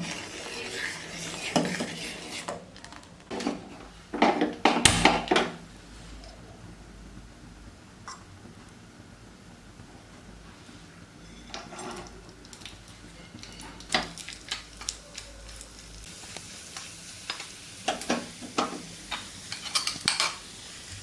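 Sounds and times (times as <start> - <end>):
spoon scraping a pan: 0.0 - 2.7, 11.1 - 15.9, 16.8 - 20.5.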